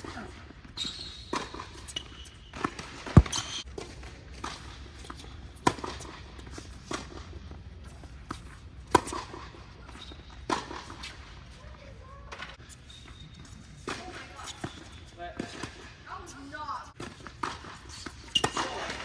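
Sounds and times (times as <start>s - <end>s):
tennis ball struck and bouncing: 0.0s - 11.2s, 17.0s - 19.0s.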